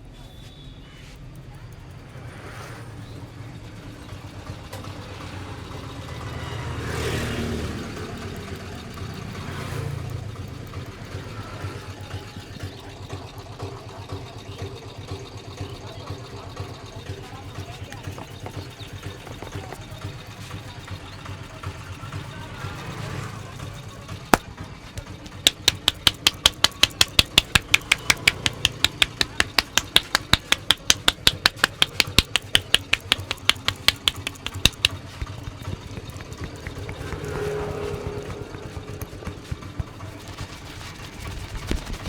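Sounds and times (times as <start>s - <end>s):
hands slapping head: 25.5s - 37.2s.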